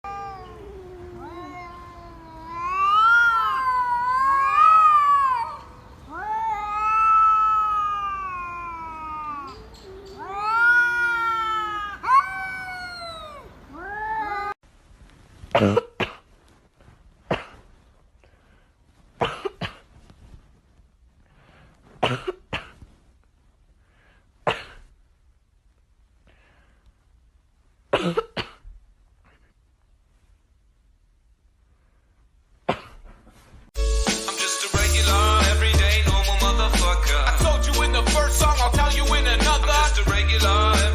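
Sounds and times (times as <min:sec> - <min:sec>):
cat yowling: 0:00.0 - 0:14.6
sharp cough-like bursts: 0:17.3 - 0:17.7, 0:27.9 - 0:28.7.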